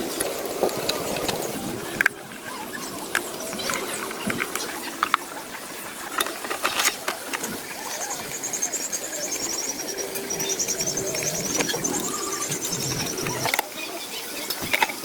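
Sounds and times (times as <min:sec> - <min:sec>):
small bird chirping trills: 0:07.7 - 0:14.4.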